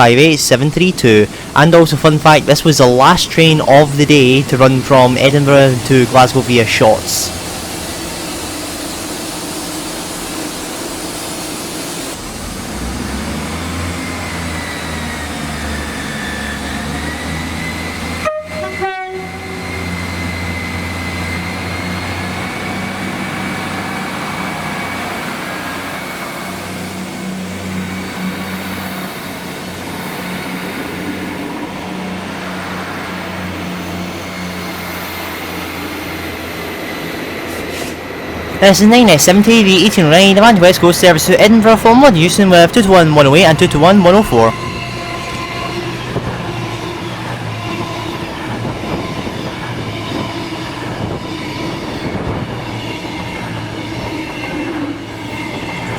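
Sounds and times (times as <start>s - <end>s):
diesel train engines droning: 0.0s - 55.9s
two-note train horn: 14.6s - 21.8s, 41.6s - 55.9s.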